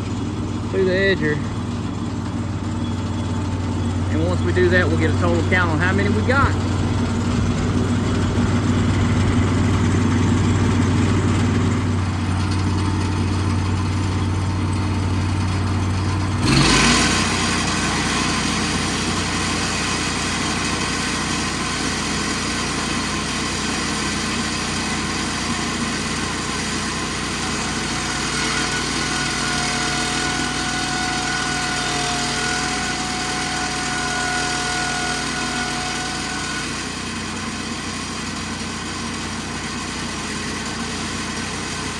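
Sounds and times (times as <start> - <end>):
gas engine running: 0.0 - 41.9.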